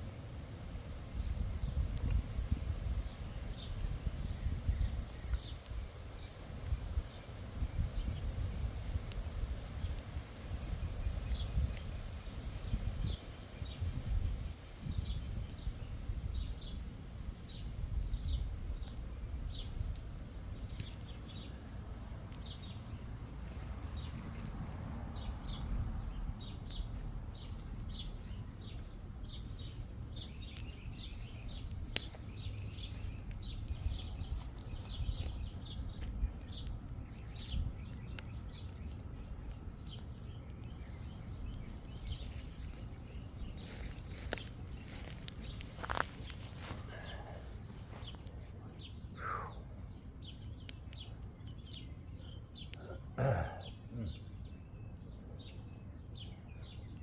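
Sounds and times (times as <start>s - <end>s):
bird chirping: 14.8s - 57.0s.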